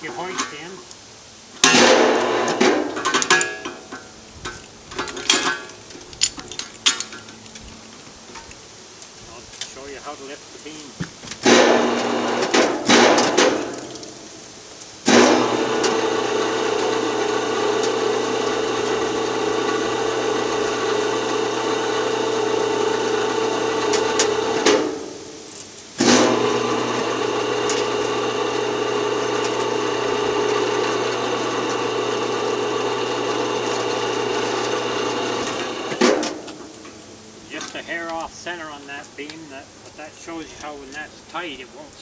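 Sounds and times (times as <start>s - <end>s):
electric hoist motor running: 1.8s - 2.8s, 11.4s - 13.8s, 15.0s - 25.2s, 26.0s - 36.8s.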